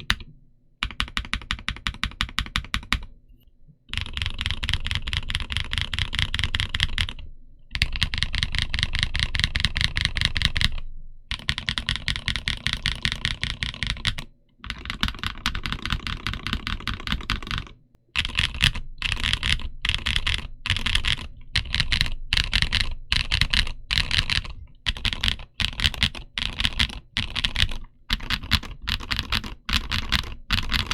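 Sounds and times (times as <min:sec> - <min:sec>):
fast typing on mechanical keyboard: 0:00.8 - 0:03.1, 0:03.9 - 0:30.9.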